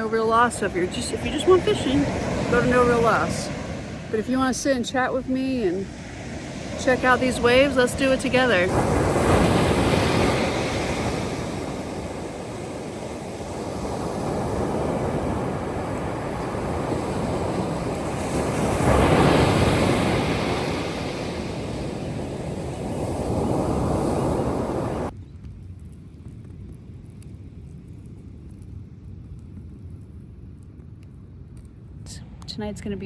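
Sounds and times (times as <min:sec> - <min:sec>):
ocean surf breaking: 0:00.0 - 0:25.1.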